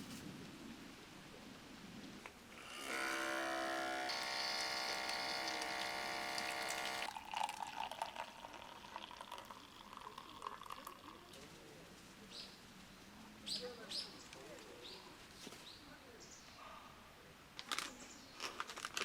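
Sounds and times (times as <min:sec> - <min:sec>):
rustling: 0:00.0 - 0:00.4
small electric motor buzzing: 0:02.5 - 0:07.1.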